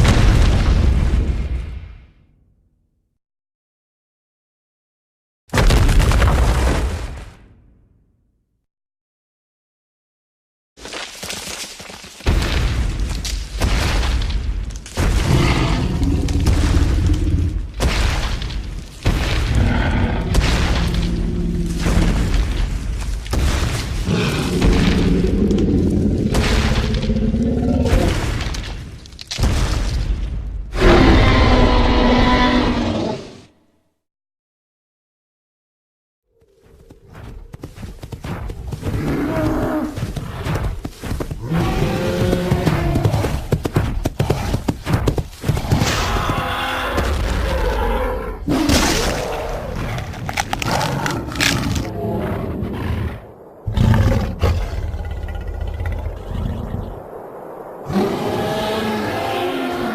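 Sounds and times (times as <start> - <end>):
monster roar-like cry: 30.8 - 33.4, 57.9 - 59.9.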